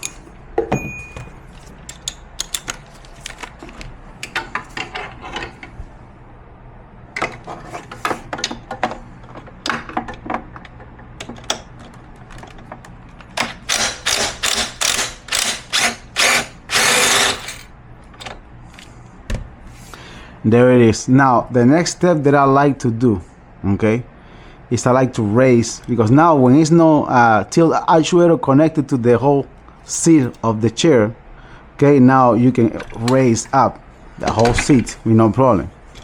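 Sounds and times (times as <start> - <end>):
ratchet wrench clicking: 13.6 - 17.6.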